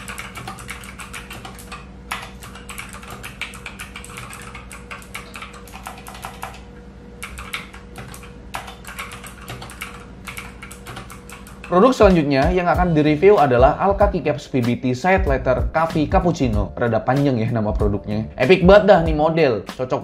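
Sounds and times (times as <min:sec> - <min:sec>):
fast typing on mechanical keyboard: 0:00.0 - 0:12.6.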